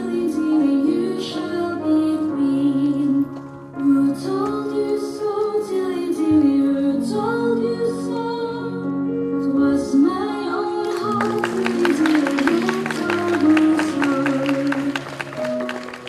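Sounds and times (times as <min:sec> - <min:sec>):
woman singing: 0:00.0 - 0:15.3.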